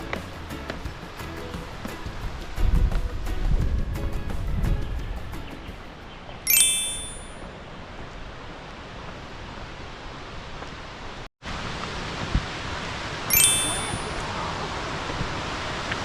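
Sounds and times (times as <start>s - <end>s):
bell-like ding: 6.5s - 7.4s, 13.3s - 14.2s.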